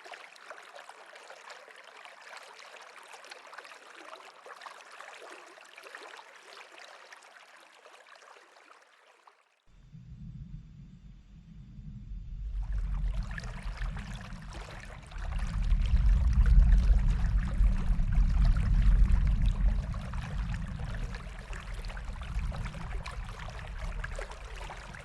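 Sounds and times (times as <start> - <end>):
running water rushing: 9.9 - 25.0.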